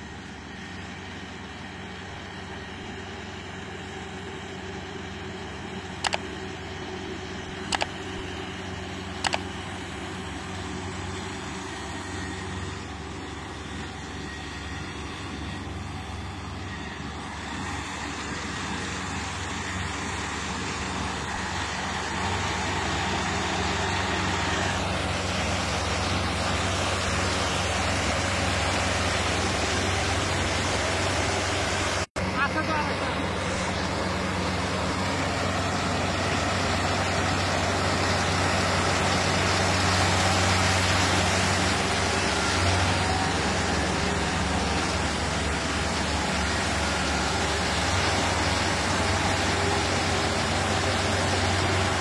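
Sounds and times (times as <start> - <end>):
harvester diesel engine running: 0.0 - 52.0
short sharp clicks: 9.2 - 9.5.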